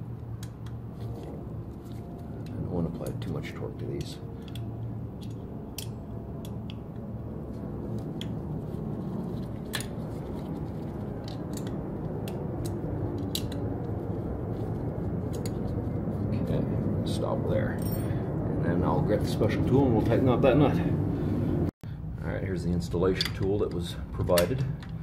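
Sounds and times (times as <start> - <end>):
low background rumble: 0.0 - 25.0
hand tool metallic clicks: 4.0 - 6.8.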